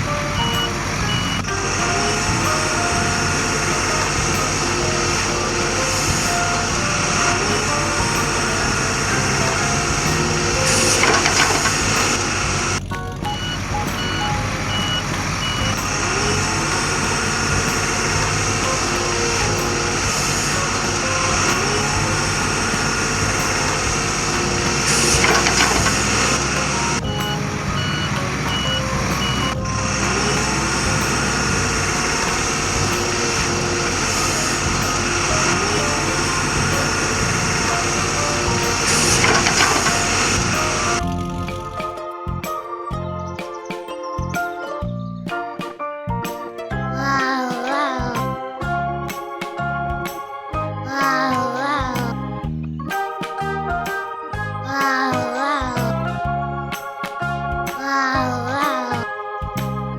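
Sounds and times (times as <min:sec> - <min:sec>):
reversing beeper: 0:00.0 - 0:19.0, 0:20.8 - 0:41.0
cartoon vehicle engine running: 0:00.0 - 0:42.4.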